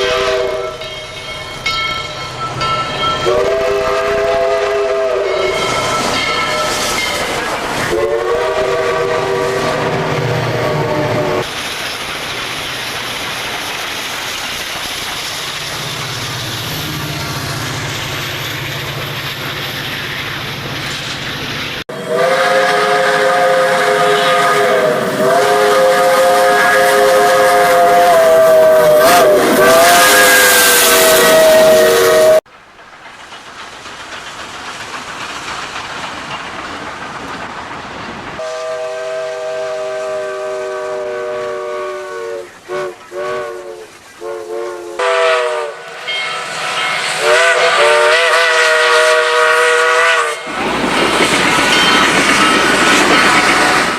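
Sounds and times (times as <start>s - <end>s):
steam locomotive chime whistle: 0.0s - 11.5s, 21.9s - 32.5s, 38.4s - 53.2s
train running noise: 0.0s - 53.9s.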